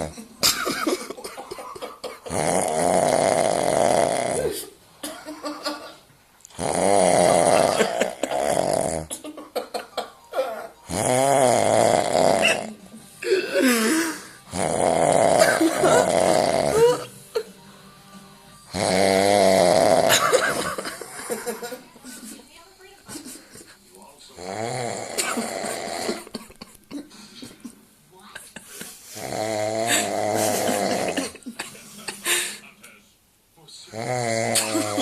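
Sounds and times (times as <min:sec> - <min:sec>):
man snoring loudly: 0:02.3 - 0:04.6, 0:06.5 - 0:09.1, 0:10.8 - 0:17.1, 0:18.7 - 0:21.4, 0:24.4 - 0:26.4, 0:29.2 - 0:31.4, 0:33.9 - 0:35.0.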